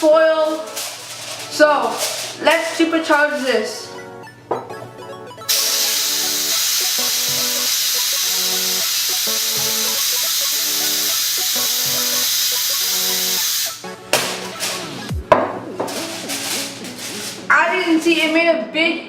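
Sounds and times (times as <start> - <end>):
background music: 0.0 - 19.0
compressed air spray hissing: 5.5 - 13.8.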